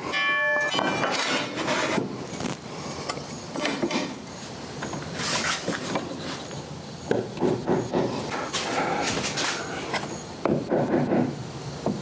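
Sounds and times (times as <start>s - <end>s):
wood parts tapped and knocking: 3.1s - 4.2s, 4.8s - 12.0s.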